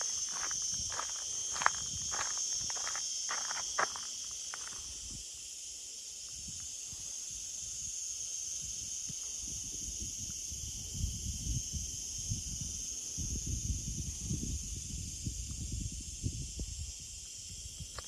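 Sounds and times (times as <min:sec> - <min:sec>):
footsteps on path: 0:00.0 - 0:04.9
insects chirring: 0:00.0 - 0:18.0.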